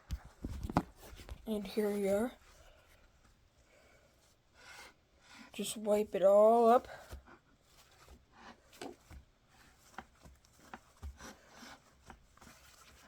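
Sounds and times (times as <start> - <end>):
soft taps and scuffs: 0.0 - 3.4, 6.8 - 13.0.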